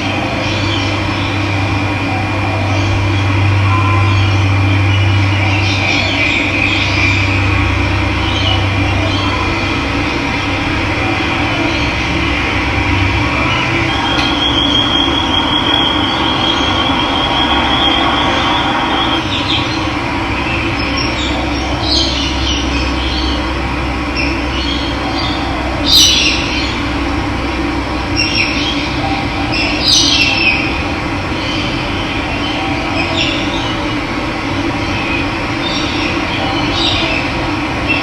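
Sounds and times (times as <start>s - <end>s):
birds calling: 0.0s - 38.0s
high wavering trill: 1.4s - 20.0s.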